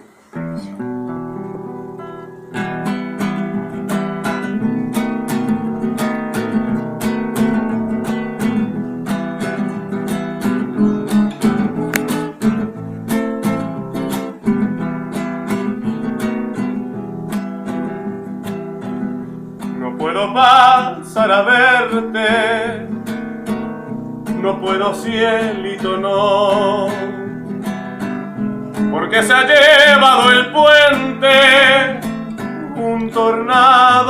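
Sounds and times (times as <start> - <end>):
acoustic guitar strumming: 0.0 - 34.0.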